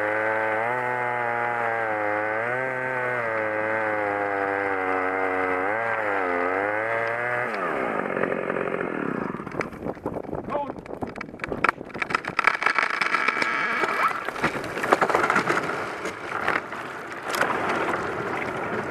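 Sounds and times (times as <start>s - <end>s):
chainsaw cutting at high revs: 0.0s - 9.7s.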